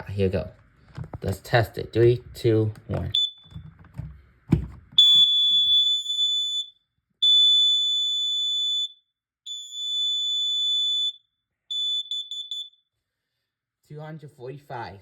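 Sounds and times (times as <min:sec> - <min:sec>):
short alarm beeps: 0:03.1 - 0:03.6, 0:05.0 - 0:12.8
high-pitched alarm tones: 0:09.5 - 0:12.8.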